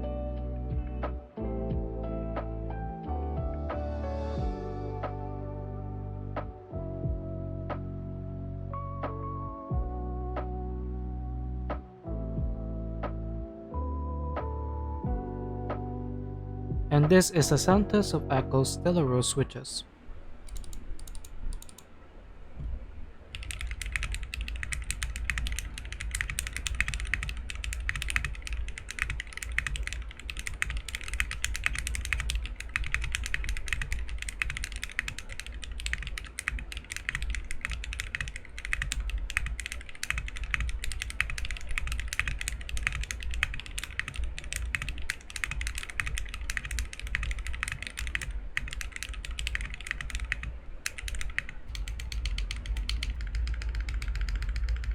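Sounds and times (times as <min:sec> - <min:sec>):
low steady hum: 0:14.8 - 0:54.9
typing on mechanical keyboard: 0:20.5 - 0:21.8, 0:23.4 - 0:54.9.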